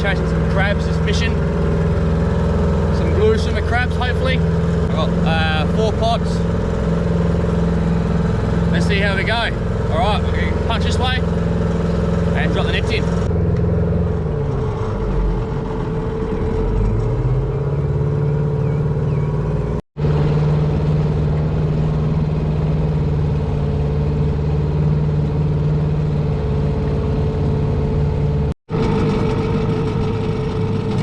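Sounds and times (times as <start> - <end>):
outboard motor running: 0.0 - 31.0.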